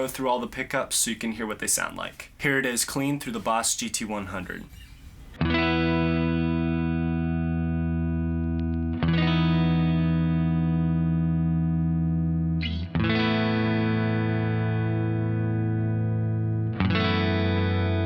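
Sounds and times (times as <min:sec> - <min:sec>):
clean electric guitar chords: 0:05.4 - 0:18.0.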